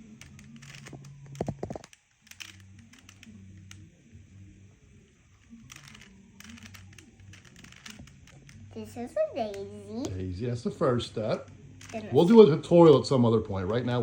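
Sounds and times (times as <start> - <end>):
plastic puzzle cube clicking: 0.1 - 3.8, 5.4 - 8.7.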